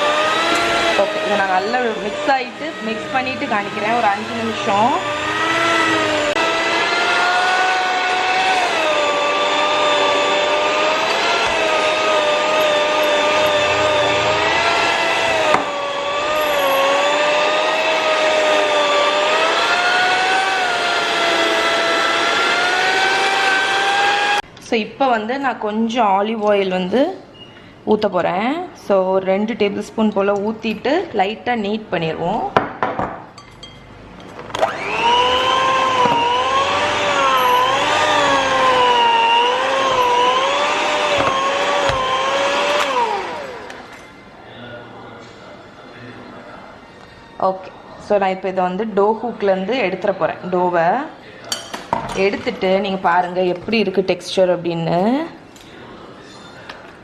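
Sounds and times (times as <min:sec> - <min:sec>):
electric mixer whine: 0:00.0 - 0:24.4, 0:34.4 - 0:44.1.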